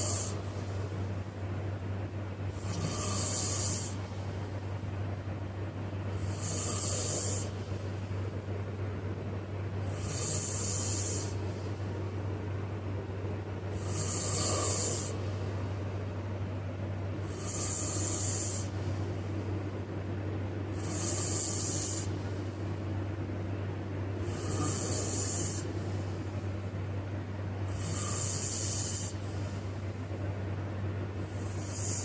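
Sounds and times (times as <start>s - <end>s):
person snoring: 0.0s - 0.6s, 2.5s - 4.1s, 6.1s - 7.6s, 9.8s - 11.6s, 13.7s - 15.4s, 17.2s - 18.8s, 20.7s - 22.2s, 24.2s - 25.7s, 27.7s - 29.3s, 31.2s - 32.0s
steady low hum: 0.0s - 32.0s.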